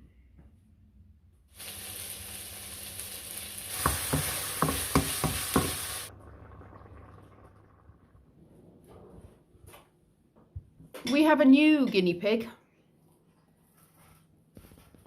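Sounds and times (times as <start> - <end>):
food sizzling in frying pan: 1.6 - 6.1
utensil knocking on pan: 3.8 - 5.9.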